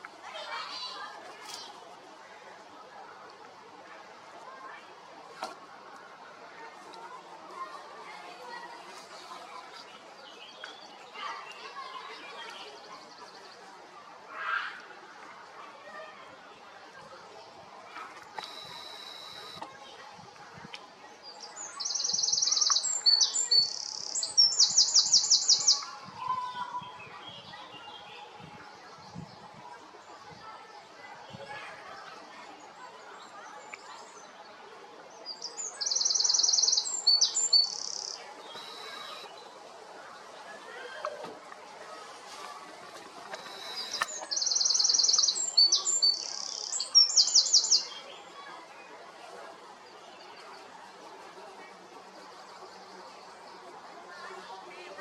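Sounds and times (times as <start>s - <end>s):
songbird singing with fast trills: 18.4s - 19.6s, 21.4s - 25.9s, 35.3s - 39.4s, 43.3s - 48.0s
sharp click: 43.3s - 44.2s.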